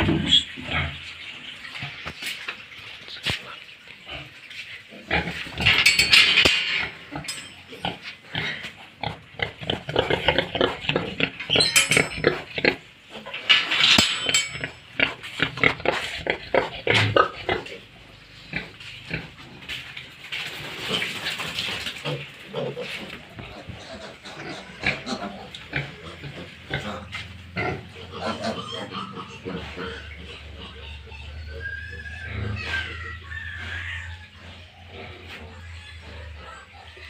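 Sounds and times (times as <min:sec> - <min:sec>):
pigs grunting and squealing: 0:00.0 - 0:02.3, 0:03.2 - 0:37.0
knocks and clatters: 0:05.6 - 0:07.7, 0:11.5 - 0:12.4, 0:13.4 - 0:15.0.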